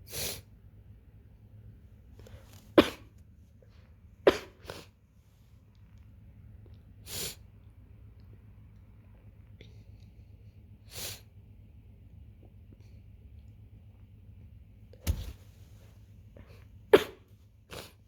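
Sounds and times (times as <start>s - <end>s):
person coughing: 2.8s - 3.1s, 4.3s - 4.9s, 17.0s - 18.0s.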